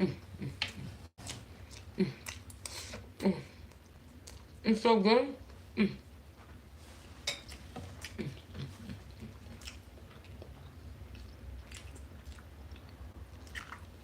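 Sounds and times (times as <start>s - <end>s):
person chewing food: 0.4s - 4.6s, 7.4s - 14.0s.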